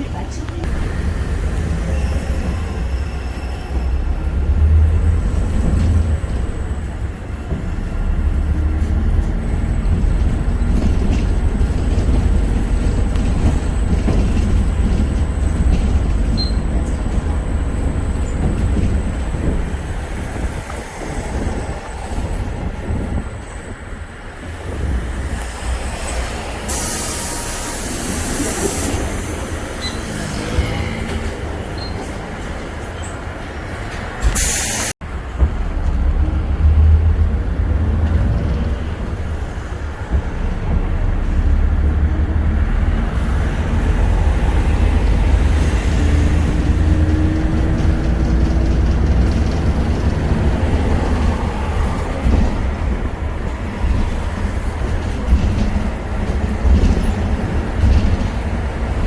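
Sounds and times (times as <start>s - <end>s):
bus engine rumble: 0.0s - 59.0s
pneumatic air hiss: 26.6s - 29.3s, 34.2s - 34.9s.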